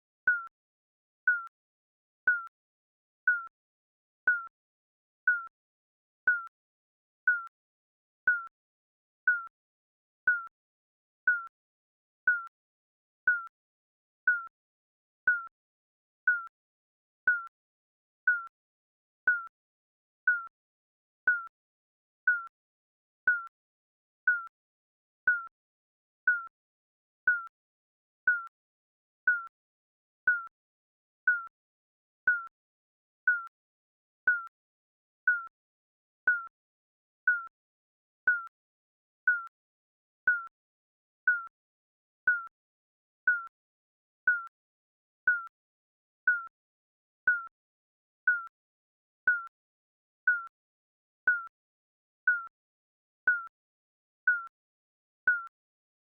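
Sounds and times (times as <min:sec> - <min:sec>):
timer beeping: 0:02.3 - 0:02.5, 0:04.3 - 0:04.5, 0:06.3 - 0:06.5, 0:07.3 - 0:07.5, 0:09.3 - 0:09.5, 0:11.3 - 0:11.5, 0:12.3 - 0:12.5, 0:13.3 - 0:13.5, 0:14.3 - 0:14.5, 0:16.3 - 0:16.5, 0:19.3 - 0:19.5, 0:20.3 - 0:20.5, 0:21.3 - 0:21.5, 0:24.3 - 0:24.5, 0:26.3 - 0:26.5, 0:28.3 - 0:28.5, 0:29.3 - 0:29.5, 0:30.3 - 0:30.5, 0:36.3 - 0:36.5, 0:38.3 - 0:38.5, 0:43.3 - 0:43.5, 0:44.3 - 0:44.5, 0:46.3 - 0:46.5, 0:47.3 - 0:47.5, 0:48.3 - 0:48.5, 0:51.3 - 0:51.5, 0:53.3 - 0:53.5.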